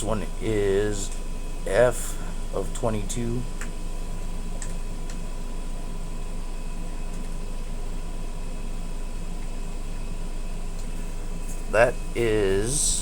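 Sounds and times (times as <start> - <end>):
mechanical hum and hiss: 0.0 - 13.0.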